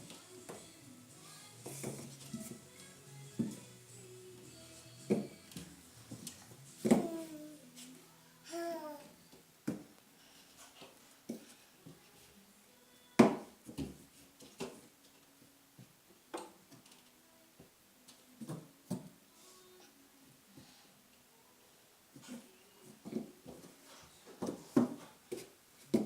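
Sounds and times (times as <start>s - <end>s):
toddler knocking and tapping: 6.1s - 7.4s.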